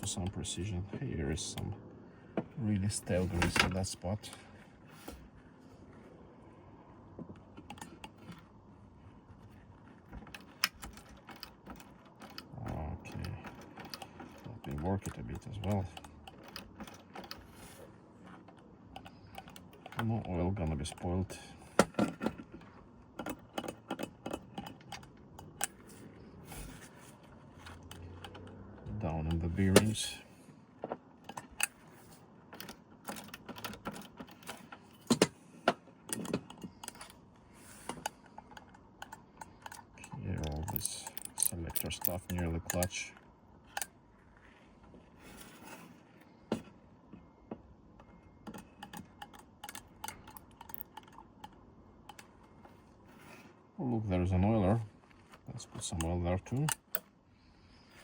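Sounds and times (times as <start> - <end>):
metallic mechanism clicks: 37.9 - 44.0, 48.4 - 52.4, 55.8 - 57.1.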